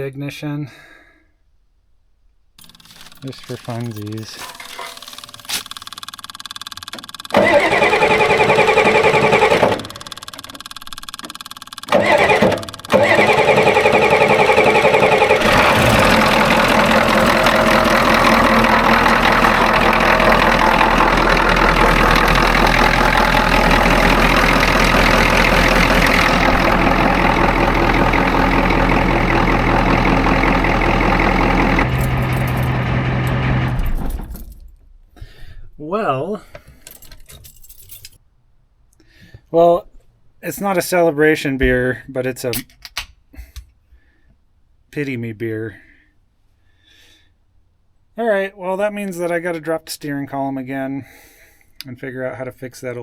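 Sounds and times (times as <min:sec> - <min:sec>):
starter cranking diesel engine: 0:02.6 - 0:34.5.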